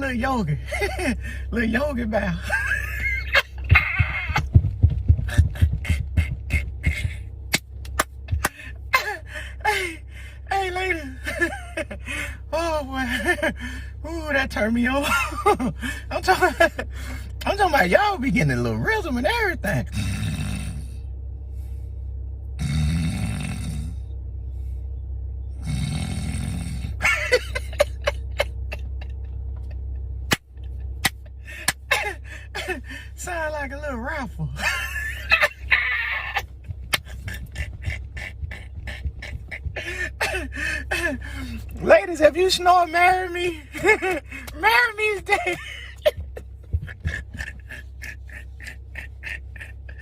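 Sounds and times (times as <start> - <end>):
man imitating snoring: 19.9 - 20.9, 22.6 - 24.0, 25.6 - 27.0.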